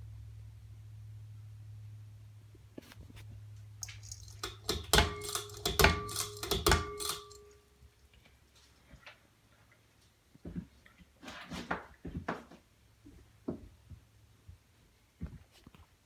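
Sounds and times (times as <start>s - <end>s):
ceiling fan humming: 0.0s - 8.6s
sharp clinks and knocks: 3.8s - 7.7s.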